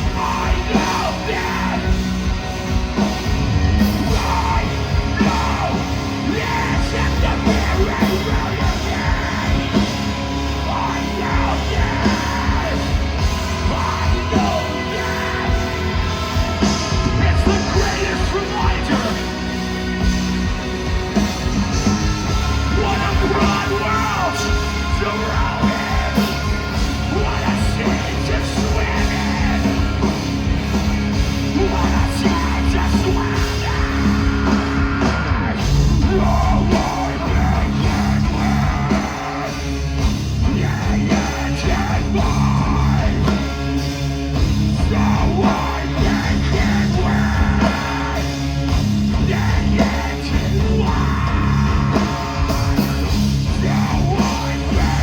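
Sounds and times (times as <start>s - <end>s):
heavy live band music: 0.0s - 55.0s
yelled vocals: 0.0s - 55.0s.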